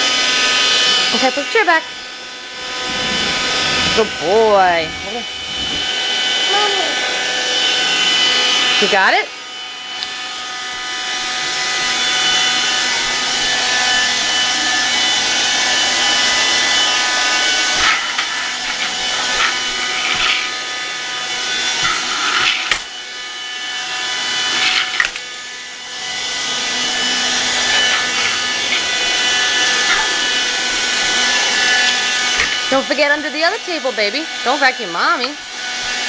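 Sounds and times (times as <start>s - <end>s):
vacuum cleaner motor whine: 0.0s - 36.0s
vacuum cleaner knocks and scrapes: 2.7s - 6.0s, 16.5s - 22.9s.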